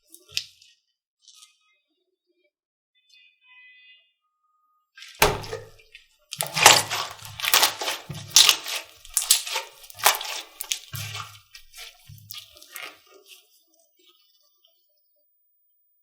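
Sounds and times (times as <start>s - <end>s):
dull thump: 5.2s - 5.8s
slime crunchy squishes: 5.2s - 13.4s.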